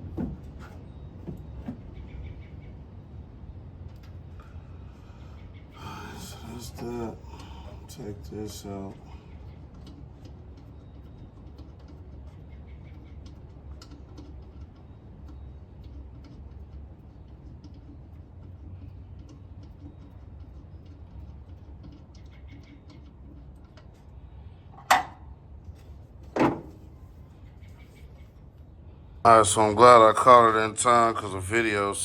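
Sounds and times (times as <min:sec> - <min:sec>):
sharp knocks: 0:00.0 - 0:01.8
steady low hum: 0:00.0 - 0:32.0.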